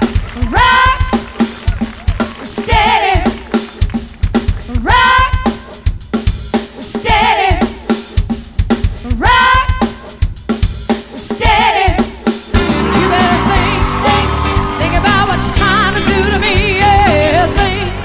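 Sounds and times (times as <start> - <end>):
soul band playing: 0.0 - 5.8, 10.9 - 18.0
drum kit groove: 0.0 - 18.0.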